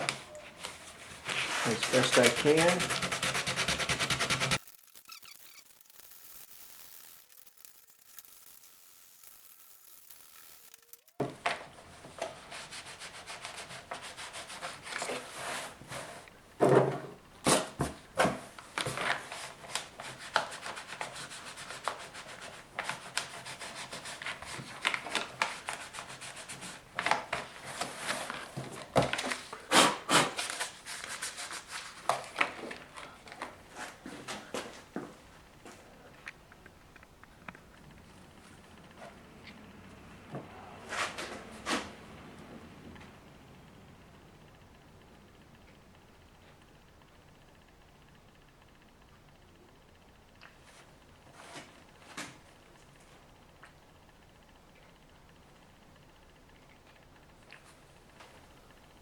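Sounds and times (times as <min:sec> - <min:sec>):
sandpaper scratching plastic: 0:01.2 - 0:11.2, 0:12.2 - 0:16.0, 0:19.2 - 0:28.3, 0:29.2 - 0:32.4.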